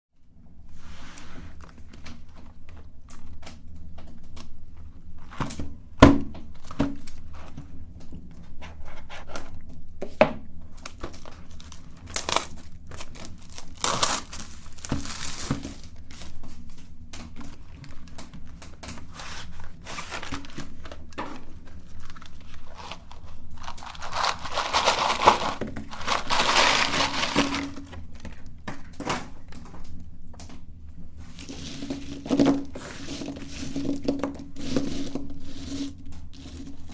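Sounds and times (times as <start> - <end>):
low steady hum: 0.2 - 36.9
plastic wrappers crinkling and tearing: 10.7 - 30.0, 31.2 - 36.9.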